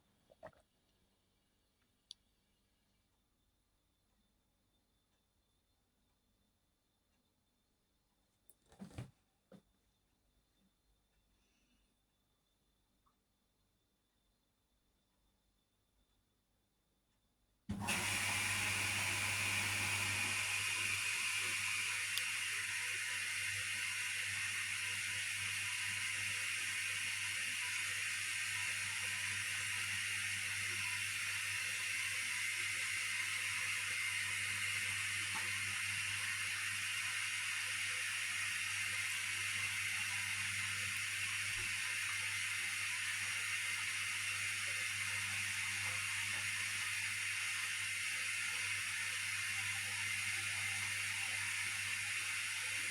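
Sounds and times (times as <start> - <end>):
washing machine running: 17.7 - 52.9.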